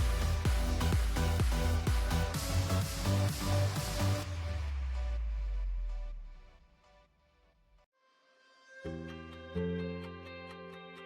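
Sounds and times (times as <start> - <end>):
electronic music with beat: 0.0 - 7.0.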